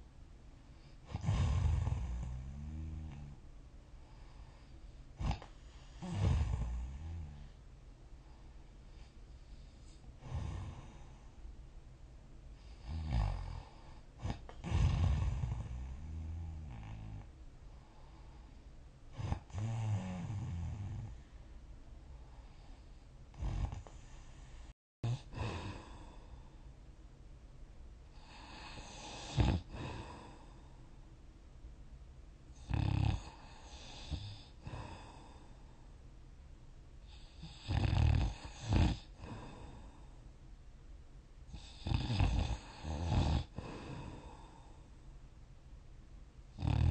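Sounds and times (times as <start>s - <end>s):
person snoring: 1.0s - 3.4s, 5.2s - 7.6s, 9.9s - 11.3s, 12.7s - 17.3s, 19.2s - 21.2s, 25.0s - 26.4s, 28.2s - 30.7s, 32.6s - 35.5s, 37.1s - 40.0s, 41.5s - 44.8s, 46.6s - 46.9s.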